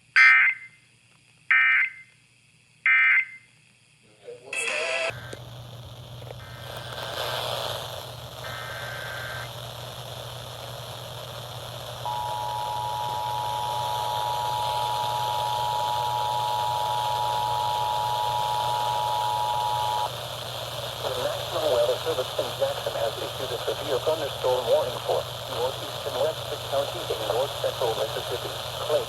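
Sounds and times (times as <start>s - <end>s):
low hum: 5.1s - 21.5s
steady hiss: 5.1s - 29.0s
digital header data bursts: 8.4s - 9.5s
two-tone attention signal: 12.1s - 20.1s.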